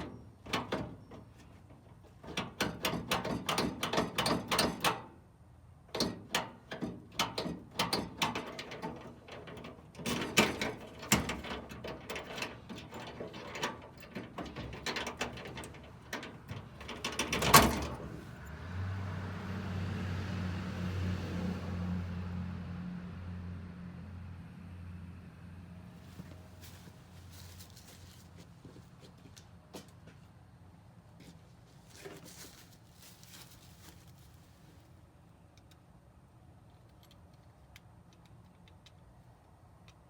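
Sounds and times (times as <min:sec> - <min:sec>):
metal tools rattling: 0:06.0 - 0:18.4.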